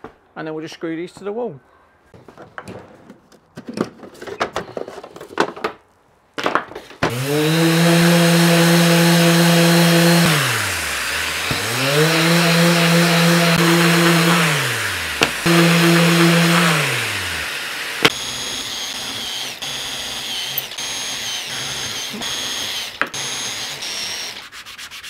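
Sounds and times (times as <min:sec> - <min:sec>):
plywood knocking and clattering: 0:02.2 - 0:05.8
electric power tool spinning: 0:07.1 - 0:24.5.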